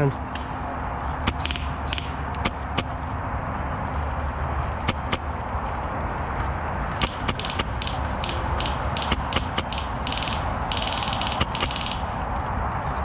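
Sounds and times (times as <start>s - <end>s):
outdoor rumble: 0.0s - 13.0s
airsoft rifle shot clicks: 7.0s - 12.1s.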